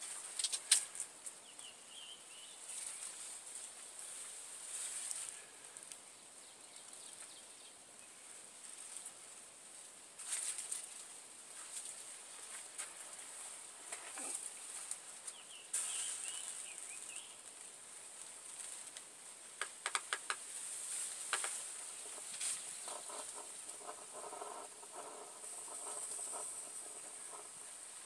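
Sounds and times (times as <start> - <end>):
sharp ticks: 19.6 - 20.4
alcohol stove hissing: 21.9 - 28.0.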